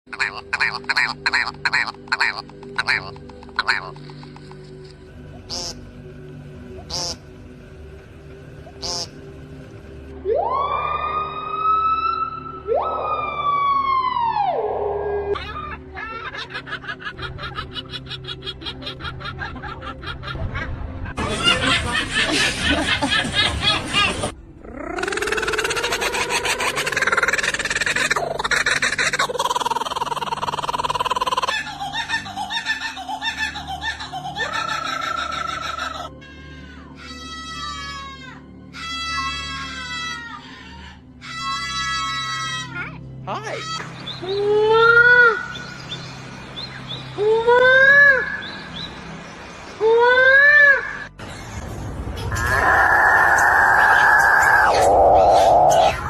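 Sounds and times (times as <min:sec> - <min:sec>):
bird buzzy pulsed calls: 0:08.7 - 0:09.2, 0:52.3 - 0:56.0.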